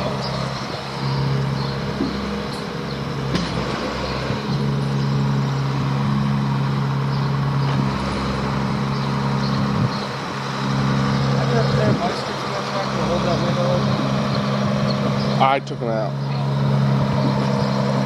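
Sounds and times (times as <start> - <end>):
vehicle engine idling: 0.0 - 18.0.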